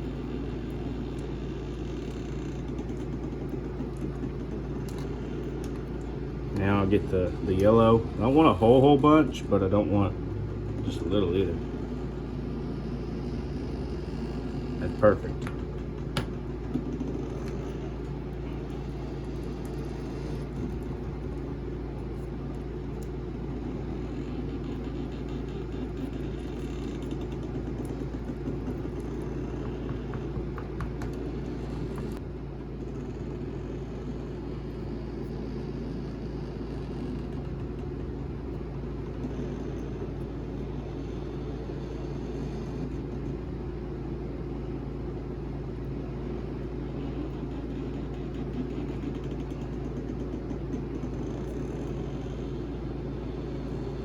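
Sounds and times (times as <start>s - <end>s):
machine hum with tones: 0.0s - 54.0s.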